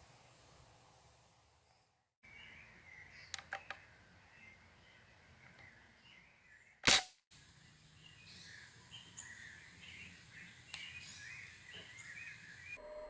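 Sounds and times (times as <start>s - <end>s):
birds chirping and trilling: 1.7s - 6.8s, 7.4s - 13.0s
pellet rifle shot: 6.8s - 7.2s.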